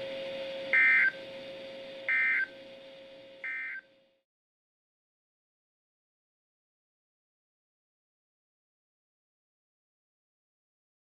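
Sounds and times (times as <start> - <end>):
steady low hum: 0.0 - 4.2
two-tone digital data bursts: 0.8 - 1.2, 2.1 - 2.5, 3.4 - 3.8.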